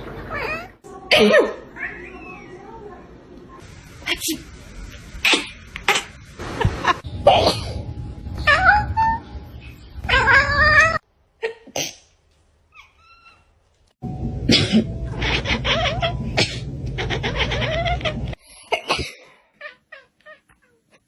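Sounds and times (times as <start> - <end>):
cat meowing: 1.8 - 2.6, 15.1 - 18.4.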